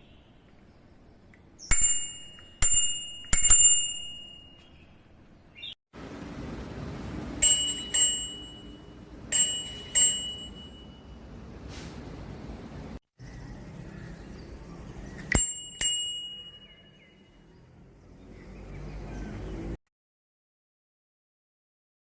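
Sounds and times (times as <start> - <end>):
bicycle bell dings: 1.6 - 5.0, 7.4 - 11.3, 15.3 - 17.2.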